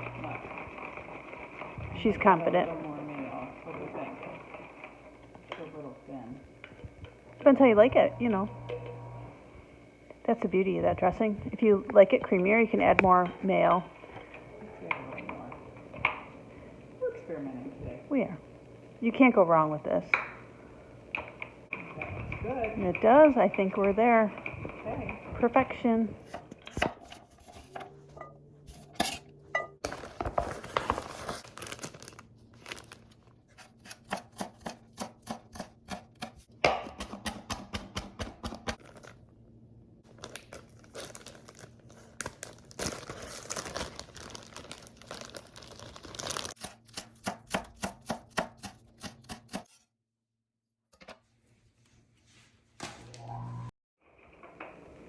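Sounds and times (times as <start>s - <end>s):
knife chopping on cutting board: 33.6s - 38.8s, 46.6s - 49.8s.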